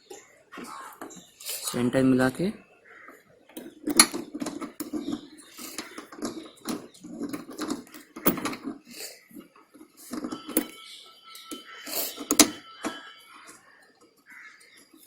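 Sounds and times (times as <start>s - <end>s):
hard plastic clicking and knocking: 3.1s - 8.9s.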